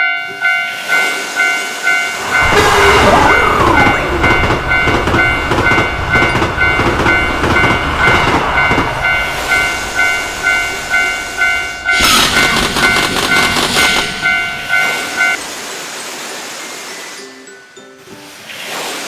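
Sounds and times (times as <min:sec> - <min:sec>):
level crossing bell ringing: 0:00.0 - 0:15.4
train rumble: 0:00.0 - 0:16.0
wheels clattering over rail joints: 0:00.0 - 0:16.2
loud rushing burst: 0:02.2 - 0:15.8.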